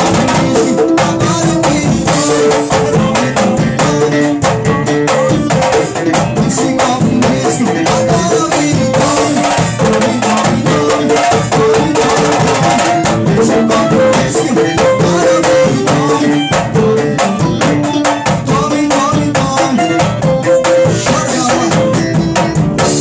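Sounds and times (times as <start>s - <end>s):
band music: 0.0s - 23.0s
fast hand percussion: 0.0s - 23.0s.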